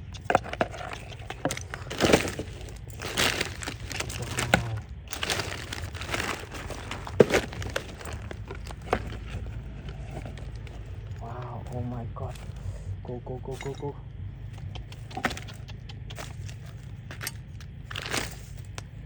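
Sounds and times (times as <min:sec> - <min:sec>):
hands rustling through dry litter: 0:00.4 - 0:12.8, 0:14.6 - 0:19.0
sharp snaps: 0:14.6 - 0:16.5.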